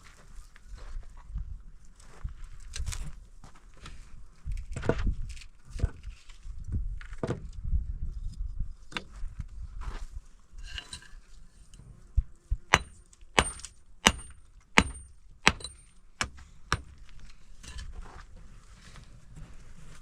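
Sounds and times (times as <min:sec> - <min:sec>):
hammer blows ringing: 0:12.7 - 0:17.0.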